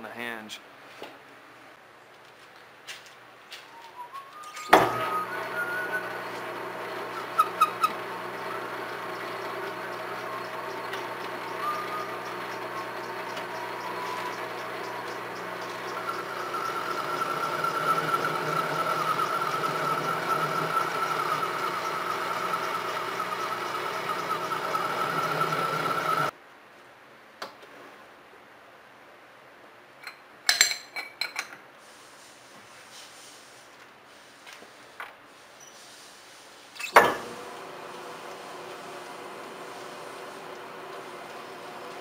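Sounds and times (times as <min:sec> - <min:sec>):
metalworking machine whining: 0:04.6 - 0:26.3, 0:37.0 - 0:42.0.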